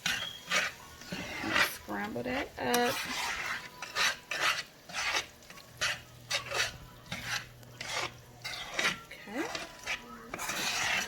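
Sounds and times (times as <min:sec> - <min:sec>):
utensil scraping a frying pan: 0:00.0 - 0:11.0.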